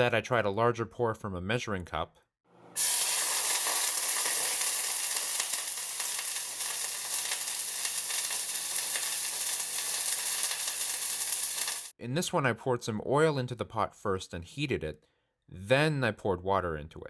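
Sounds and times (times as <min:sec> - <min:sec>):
water sizzling in hot pot: 0:02.8 - 0:12.0.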